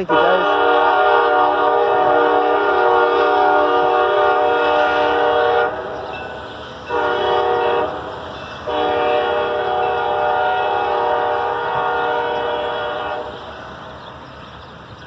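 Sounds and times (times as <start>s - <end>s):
locomotive air horn blasts: 0.0s - 6.1s, 6.8s - 13.5s.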